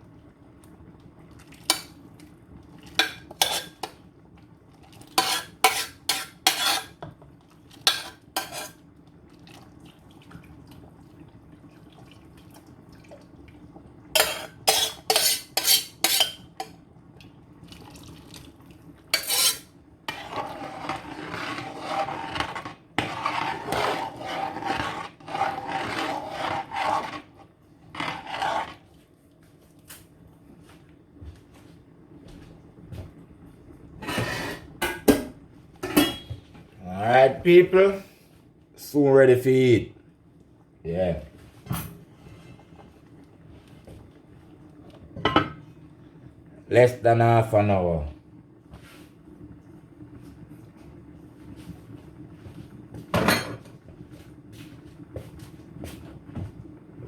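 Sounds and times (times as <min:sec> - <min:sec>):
utensil clanking in pot: 0:03.0 - 0:04.0, 0:05.1 - 0:07.0, 0:07.8 - 0:08.8, 0:14.2 - 0:16.8, 0:19.2 - 0:27.3
utensil scraping pot: 0:03.0 - 0:04.0, 0:05.0 - 0:07.0, 0:07.8 - 0:08.8, 0:14.2 - 0:16.8, 0:19.1 - 0:28.9, 0:34.0 - 0:34.7.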